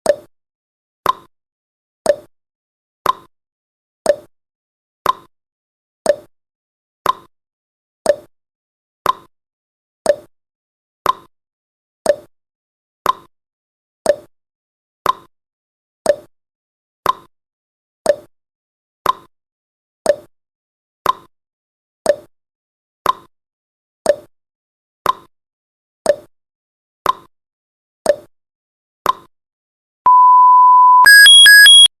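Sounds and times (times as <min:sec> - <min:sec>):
rapid alarm beeping: 0:30.1 - 0:31.9
steady beep: 0:30.1 - 0:31.9.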